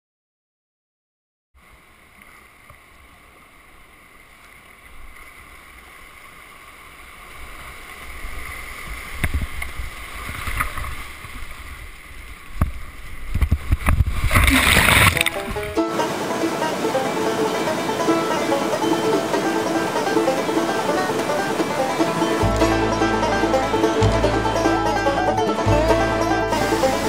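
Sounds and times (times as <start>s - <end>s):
whitewater creek rushing: 1.6s - 27.0s
paddle strokes knocking and splashing: 12.5s - 24.8s
loud water splash: 13.6s - 27.0s.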